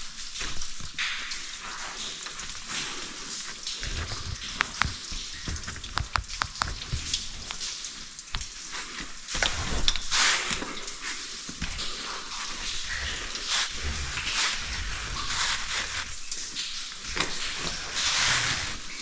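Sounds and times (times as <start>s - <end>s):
water running down waterfall: 0.0s - 19.0s
clicks and knocks: 3.8s - 7.8s.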